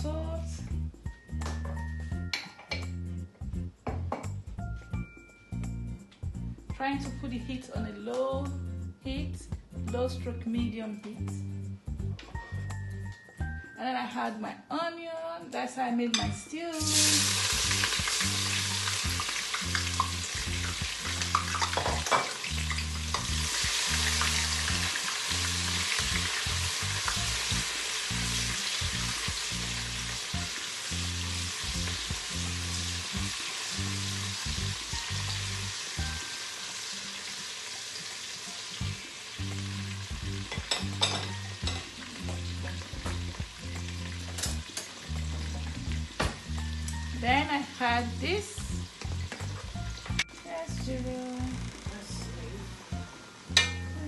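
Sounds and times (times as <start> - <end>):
onions sizzling in oil: 16.8 - 50.3.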